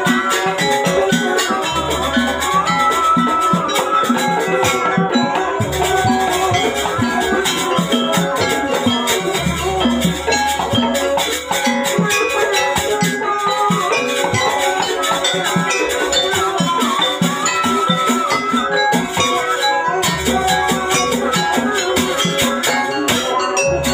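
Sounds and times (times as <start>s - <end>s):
percussion ensemble playing: 0.0s - 23.9s
wavering melody line: 0.0s - 23.9s.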